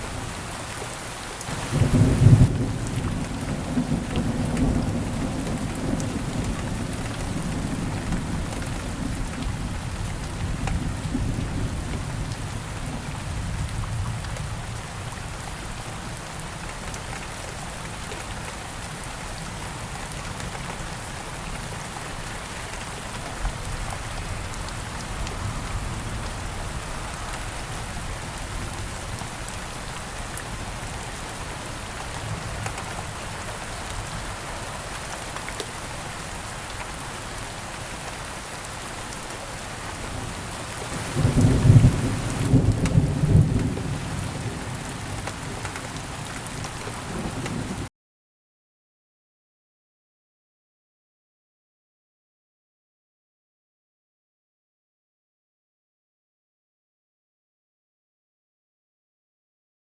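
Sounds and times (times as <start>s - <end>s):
steady rain falling: 0.0s - 47.9s
thunder rumbling: 1.5s - 14.6s, 40.9s - 47.9s.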